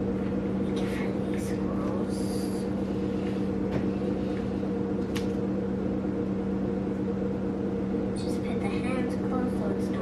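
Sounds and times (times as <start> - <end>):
steady machine hum: 0.0 - 10.0.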